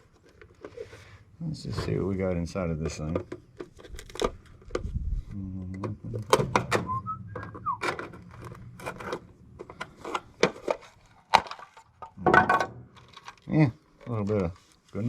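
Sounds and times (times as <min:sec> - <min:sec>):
device being pried apart: 0:03.2 - 0:04.8.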